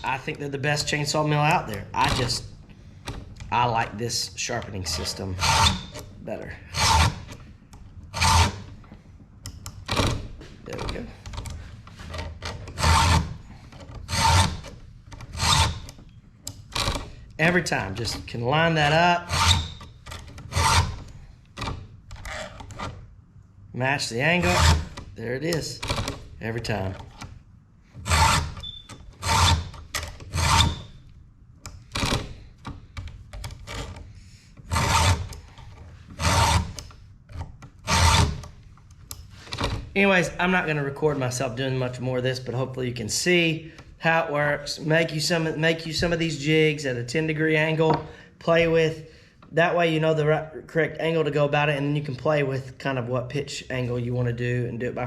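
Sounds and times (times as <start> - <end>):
hand file rasping on chain: 4.9 - 7.4, 8.1 - 8.7, 12.7 - 13.4, 14.0 - 14.6, 15.3 - 16.0, 19.2 - 19.8, 20.5 - 21.1, 24.4 - 25.0, 28.1 - 28.6, 29.2 - 29.7, 30.3 - 30.9, 34.7 - 35.5, 36.2 - 36.9, 37.8 - 38.4.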